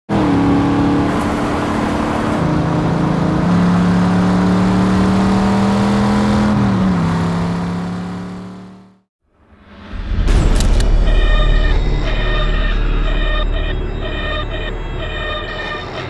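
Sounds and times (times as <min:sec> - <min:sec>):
car engine running: 0:00.1 - 0:05.4, 0:10.4 - 0:16.0.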